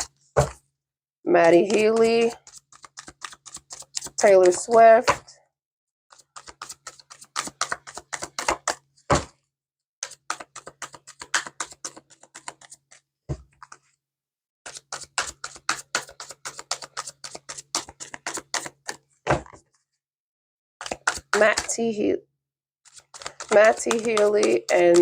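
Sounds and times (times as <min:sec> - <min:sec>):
cards being shuffled: 0:01.4 - 0:05.2, 0:06.2 - 0:09.3, 0:10.0 - 0:13.0, 0:14.7 - 0:19.0, 0:20.8 - 0:21.8, 0:22.9 - 0:25.0.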